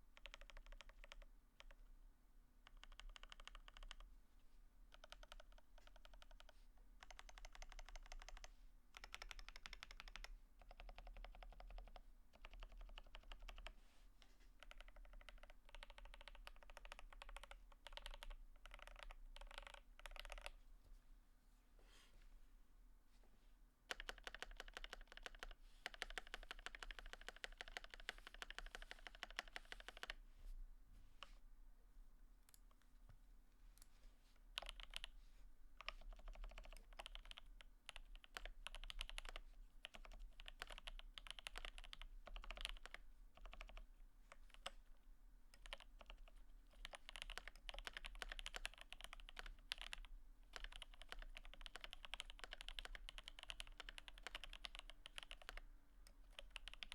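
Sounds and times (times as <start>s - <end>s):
mechanical keyboard typing: 0.2s - 1.8s, 2.6s - 4.1s, 4.9s - 13.8s, 14.6s - 20.6s, 23.9s - 30.2s, 34.6s - 35.1s, 35.8s - 44.8s, 45.5s - 56.9s.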